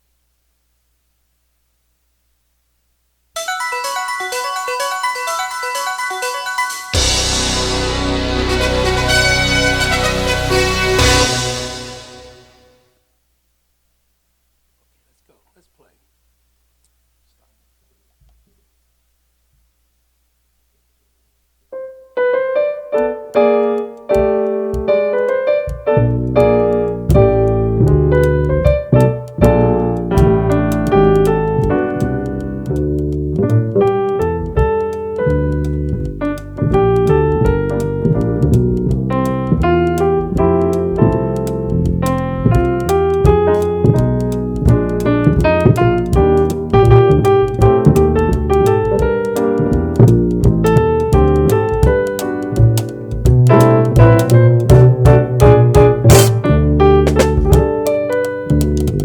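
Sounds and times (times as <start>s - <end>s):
keyboard playing chords: 3.4s - 12.7s, 23.0s - 33.0s, 33.6s - 59.0s
bass playing: 7.0s - 12.7s, 25.6s - 59.0s.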